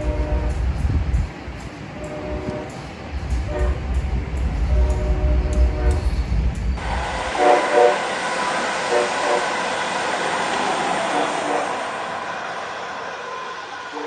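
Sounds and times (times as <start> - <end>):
train air horn blasts: 0.0 - 1.0, 2.0 - 4.0, 4.6 - 6.2, 6.8 - 9.8, 11.0 - 12.1
passing train rushing: 0.0 - 14.0.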